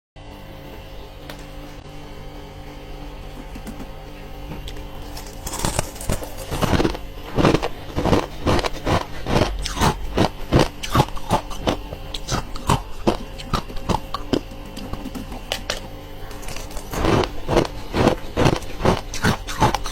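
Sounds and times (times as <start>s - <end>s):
person crunching frost: 4.6s - 19.9s.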